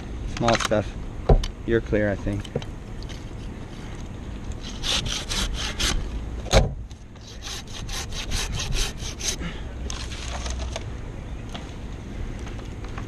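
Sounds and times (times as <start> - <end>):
hand saw cutting wood: 4.6 - 6.1, 7.2 - 9.4.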